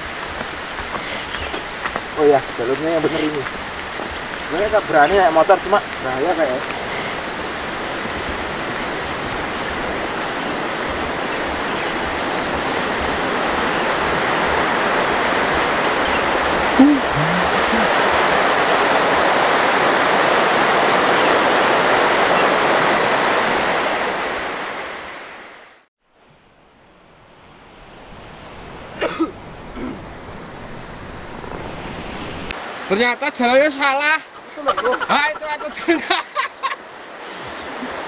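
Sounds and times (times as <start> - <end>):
water rushing: 0.0 - 25.9, 27.3 - 38.0.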